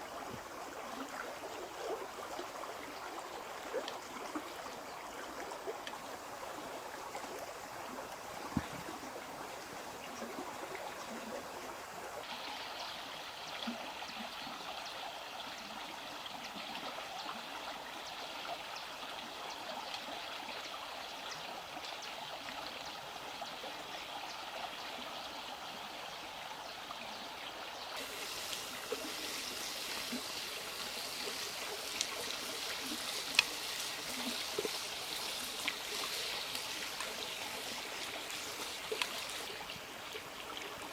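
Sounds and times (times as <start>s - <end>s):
running water rushing: 0.0s - 14.3s, 27.9s - 40.9s
faint sharp clicks: 31.9s - 32.2s, 33.2s - 34.0s, 35.6s - 39.5s.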